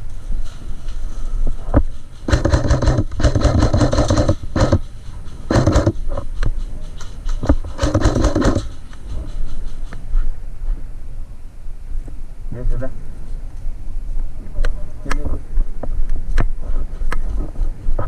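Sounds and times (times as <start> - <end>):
airsoft guns firing bursts: 2.3 - 4.9, 5.5 - 6.0, 7.4 - 8.8.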